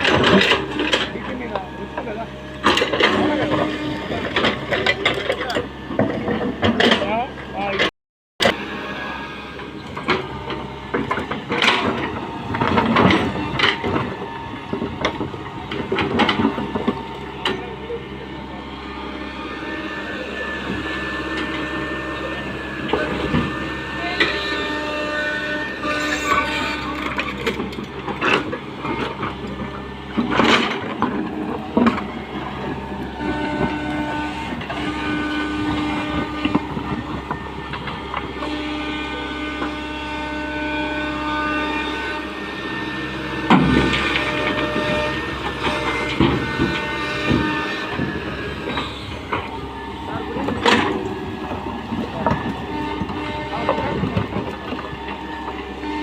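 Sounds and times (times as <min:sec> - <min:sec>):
knocks and clatter: 0:00.0 - 0:01.4, 0:02.0 - 0:07.2, 0:09.8 - 0:17.7, 0:25.9 - 0:38.6, 0:43.4 - 0:55.6
excavator diesel engine running: 0:00.0 - 0:56.0.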